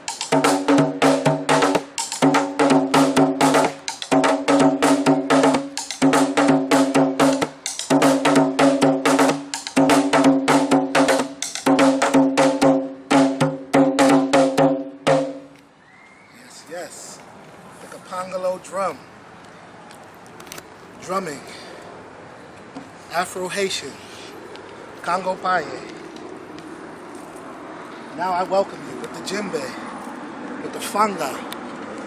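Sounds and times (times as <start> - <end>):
drum rapid strokes: 0.0 - 15.5.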